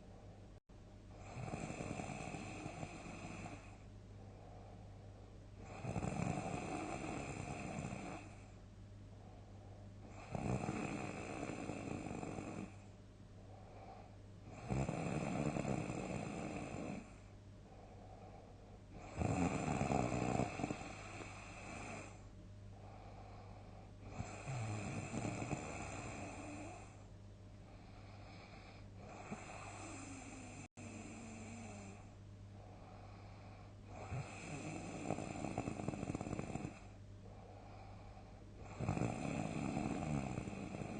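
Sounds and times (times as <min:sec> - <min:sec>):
quiet breathing: 0:00.0 - 0:40.9
person snoring loudly: 0:01.2 - 0:03.7, 0:05.6 - 0:08.4, 0:10.1 - 0:12.8, 0:14.5 - 0:17.1, 0:19.0 - 0:22.2, 0:24.0 - 0:26.9, 0:33.9 - 0:36.9, 0:38.6 - 0:40.9.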